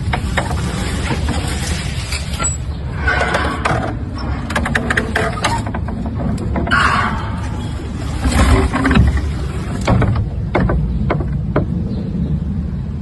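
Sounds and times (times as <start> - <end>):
gate creaking: 0.0 - 11.6
steady low rumble: 0.0 - 13.0
gate clicks: 2.4 - 11.6.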